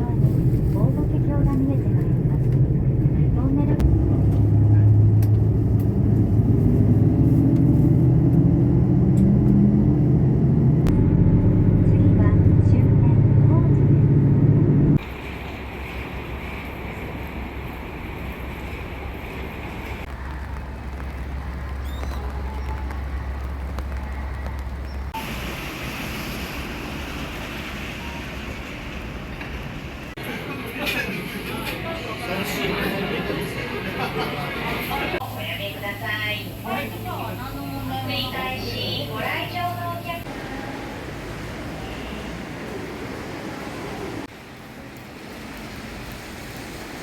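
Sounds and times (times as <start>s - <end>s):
vehicle running rumble: 0.0s - 17.0s
moving vehicle rumble: 0.0s - 47.0s.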